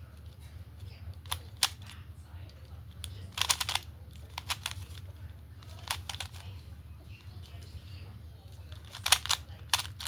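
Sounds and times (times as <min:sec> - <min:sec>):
soft handling of puzzle: 0:00.0 - 0:10.0
plastic puzzle clicking: 0:01.1 - 0:01.9, 0:03.0 - 0:05.0, 0:05.6 - 0:06.4, 0:08.7 - 0:10.0.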